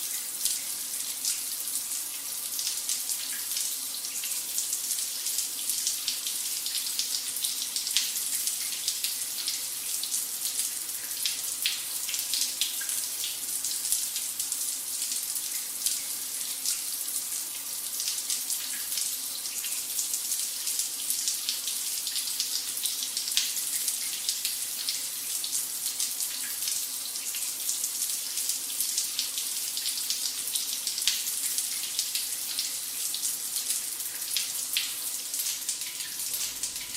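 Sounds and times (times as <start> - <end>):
shower water spraying: 35.4 - 36.9.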